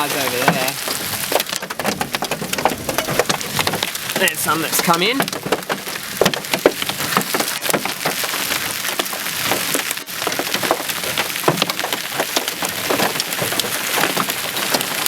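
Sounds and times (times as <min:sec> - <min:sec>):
heavy rain hiss: 0:00.0 - 0:01.2, 0:04.0 - 0:05.3
hailstones striking hard surfaces: 0:00.0 - 0:15.0.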